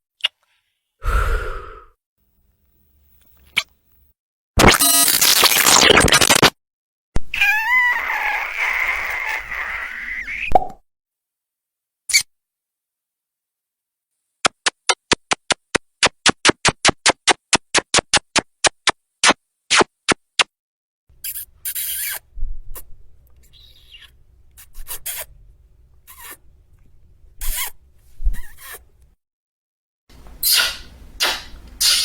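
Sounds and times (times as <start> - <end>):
kissing smacks: 24.6 - 25.3, 30.4 - 32.0.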